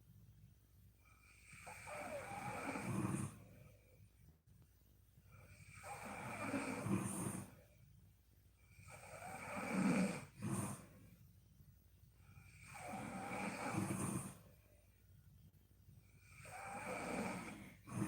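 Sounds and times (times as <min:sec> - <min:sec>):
quiet breathing: 0:00.0 - 0:18.0
woman snoring: 0:01.2 - 0:03.4, 0:05.5 - 0:07.6, 0:08.7 - 0:10.9, 0:12.4 - 0:14.4, 0:16.2 - 0:18.0.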